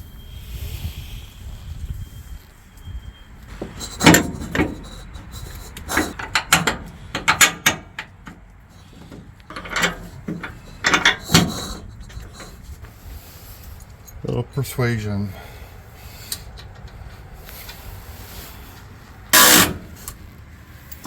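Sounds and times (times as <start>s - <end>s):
metal parts clanking: 3.5s - 12.8s, 19.3s - 20.2s.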